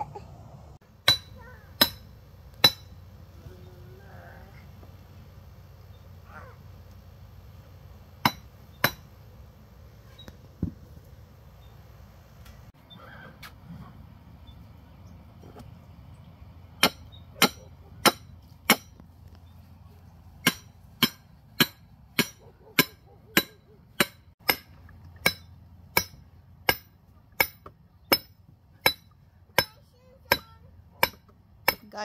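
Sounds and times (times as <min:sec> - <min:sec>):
hammer striking: 0:01.0 - 0:03.0, 0:08.2 - 0:09.1, 0:16.8 - 0:19.0, 0:20.4 - 0:31.9.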